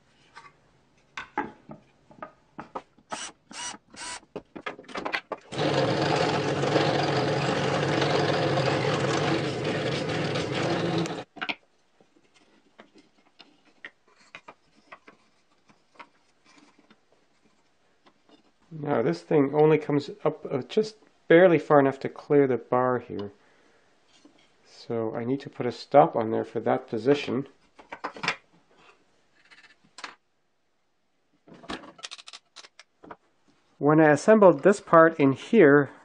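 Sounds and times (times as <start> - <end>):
electric drill running: 3.1 - 4.2, 5.5 - 11.2
wooden parts knocking and clicking: 4.3 - 5.7.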